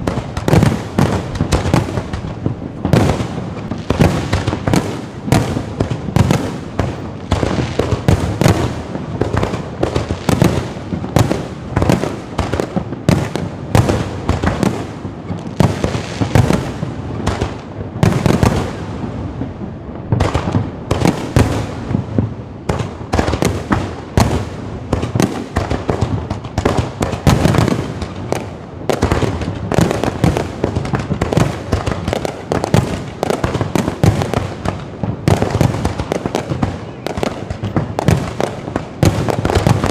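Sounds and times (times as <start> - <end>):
fireworks bangs and booms: 0.0 - 39.9.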